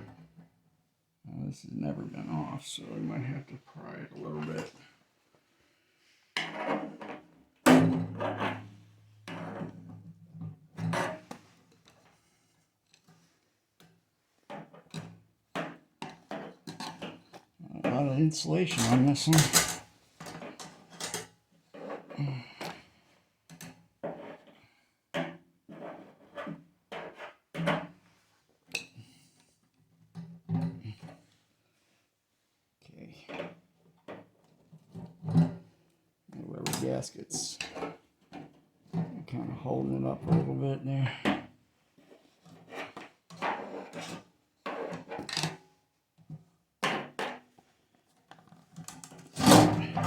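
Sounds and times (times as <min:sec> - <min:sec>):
metal cover knocks and scrapes: 0:49.0 - 0:50.0.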